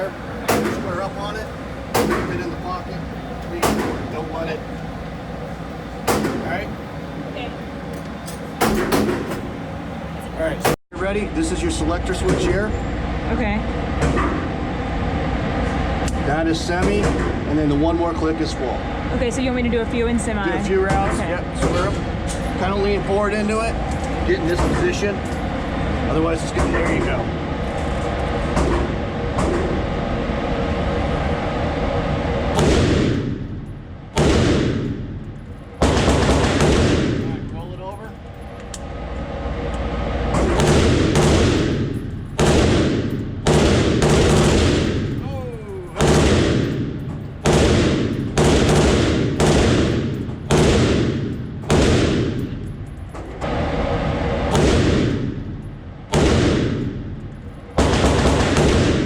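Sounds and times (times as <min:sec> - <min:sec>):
gunshots with echo: 0:00.0 - 0:02.5, 0:03.6 - 0:04.2, 0:06.0 - 0:06.8, 0:08.6 - 0:09.6, 0:32.6 - 0:33.4, 0:34.2 - 0:35.1, 0:35.8 - 0:37.4, 0:40.4 - 0:45.2, 0:46.0 - 0:52.6, 0:54.4 - 0:57.1, 0:57.8 - 0:59.0.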